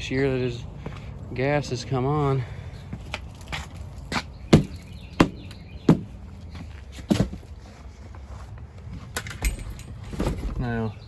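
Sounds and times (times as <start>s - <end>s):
footsteps walking: 2.8s - 4.8s, 5.9s - 10.7s.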